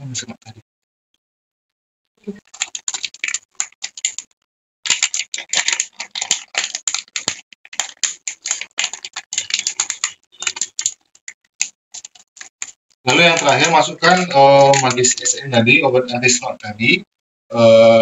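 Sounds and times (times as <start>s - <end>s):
handling clicking and crackling: 2.2s - 15.5s.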